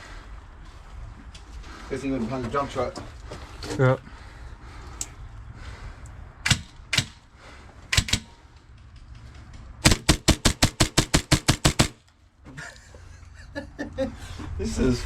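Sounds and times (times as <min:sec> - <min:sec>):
airsoft pistol shots: 0:06.4 - 0:07.2, 0:07.9 - 0:08.4, 0:09.8 - 0:12.1.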